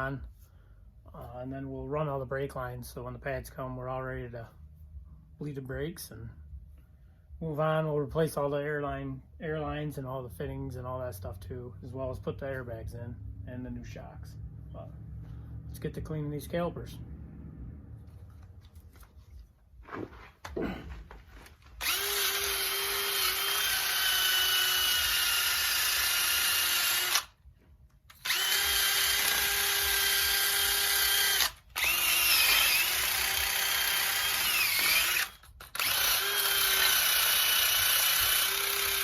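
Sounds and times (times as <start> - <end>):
power drill scouring metal: 21.4 - 27.4, 28.1 - 39.0.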